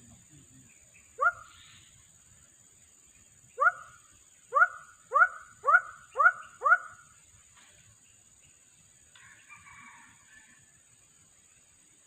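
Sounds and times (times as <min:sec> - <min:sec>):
animal bark-like calls: 0:01.2 - 0:01.7, 0:03.6 - 0:07.0.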